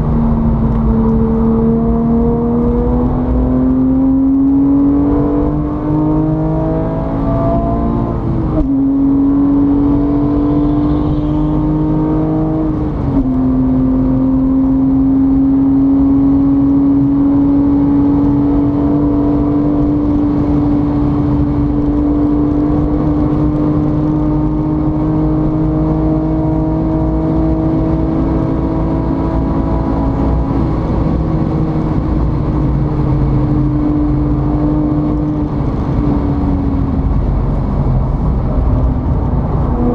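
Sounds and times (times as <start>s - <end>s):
vehicle engine changing gears: 0.0s - 39.9s.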